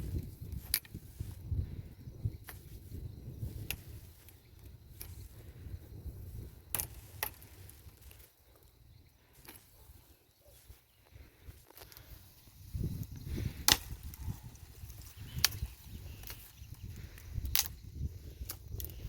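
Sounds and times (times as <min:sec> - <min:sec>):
twigs snapping: 0:00.4 - 0:01.4, 0:03.5 - 0:05.6, 0:06.7 - 0:08.6, 0:11.6 - 0:12.2, 0:12.8 - 0:19.0.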